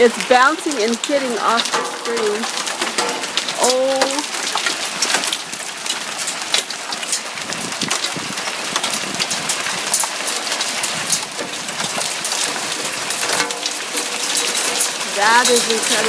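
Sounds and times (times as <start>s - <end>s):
hailstones striking hard surfaces: 0.0s - 16.0s
heavy rain: 0.0s - 16.0s.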